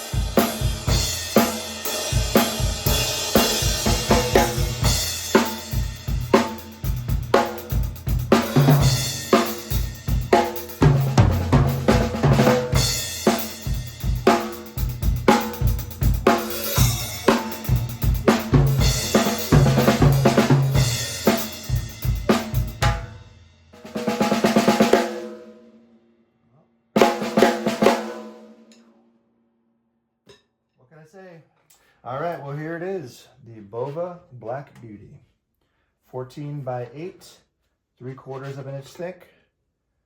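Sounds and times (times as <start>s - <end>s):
snare drum strikes and rimshots: 0.0s - 23.2s
drum kit playing a groove: 0.0s - 25.6s, 27.0s - 28.8s.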